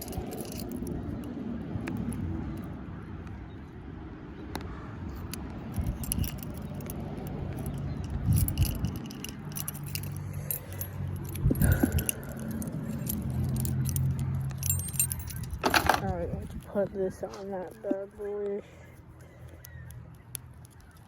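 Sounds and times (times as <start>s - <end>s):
keys and keychain jingling: 0.0s - 1.2s, 5.1s - 18.2s
low background rumble: 5.7s - 18.9s.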